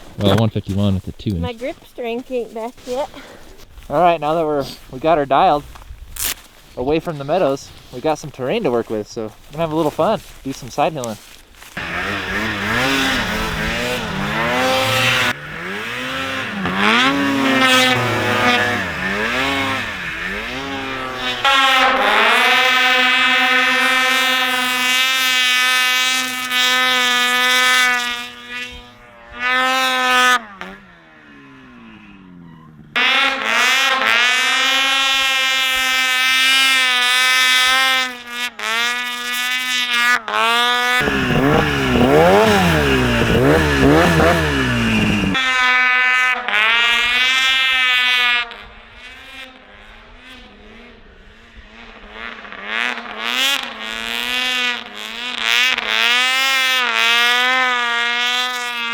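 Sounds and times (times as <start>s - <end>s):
snowmobile engines revving: 0.0s - 5.6s, 6.2s - 58.9s
harsh wavering engine: 6.2s - 36.9s, 40.4s - 45.6s.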